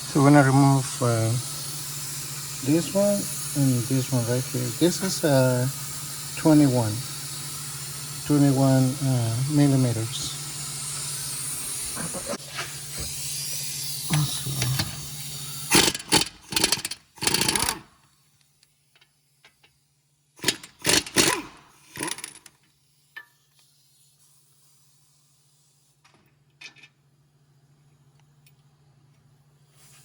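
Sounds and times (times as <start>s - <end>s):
steady hiss: 0.0s - 15.8s
impact wrench hammering: 1.4s - 12.0s, 15.7s - 17.8s, 20.4s - 22.4s.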